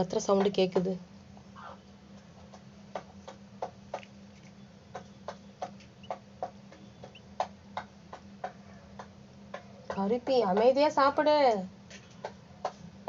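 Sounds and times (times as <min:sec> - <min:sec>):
steady low hum: 0:00.0 - 0:13.0
hen beak pecking clicks: 0:03.0 - 0:08.3.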